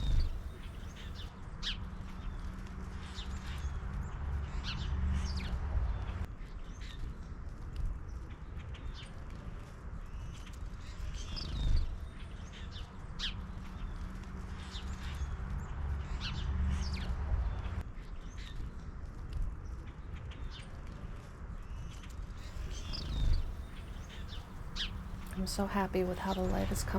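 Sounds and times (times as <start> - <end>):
low rumble with hum: 0.0 - 1.3, 22.4 - 26.9
small birds chirping: 0.0 - 1.3, 22.4 - 26.9.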